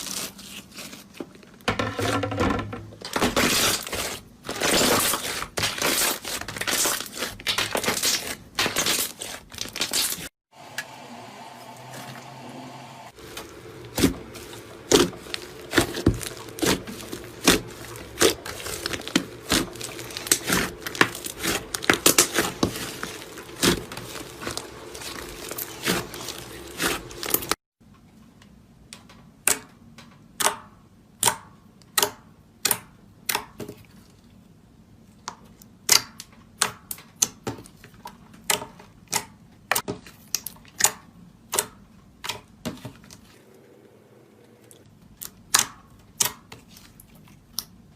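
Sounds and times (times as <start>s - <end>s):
slime crackling and popping: 13.9s - 27.6s.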